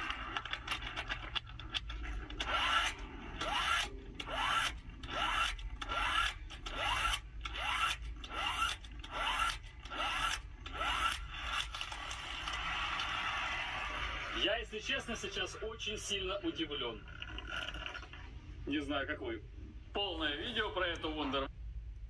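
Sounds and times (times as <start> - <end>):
motor whine: 0.0 - 15.4
impact wrench hammering: 2.1 - 12.0.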